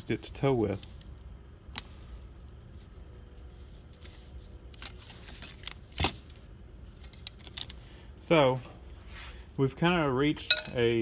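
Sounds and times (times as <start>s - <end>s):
metal parts clinking: 10.5s - 11.0s.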